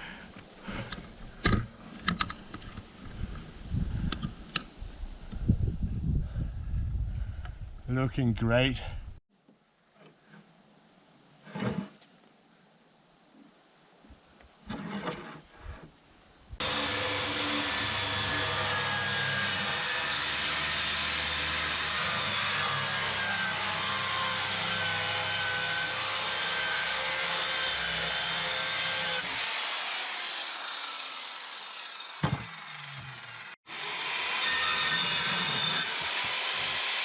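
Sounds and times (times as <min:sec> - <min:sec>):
power tool running: 0:16.6 - 0:37.0.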